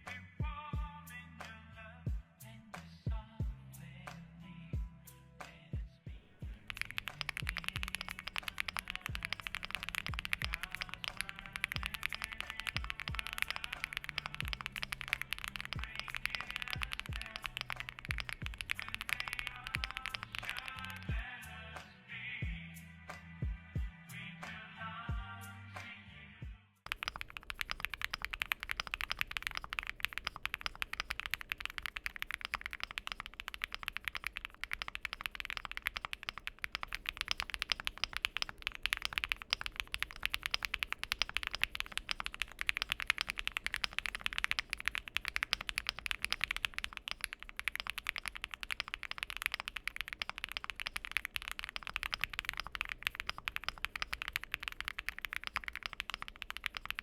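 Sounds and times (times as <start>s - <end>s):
mechanical keyboard typing: 6.2s - 21.2s, 26.9s - 57.0s.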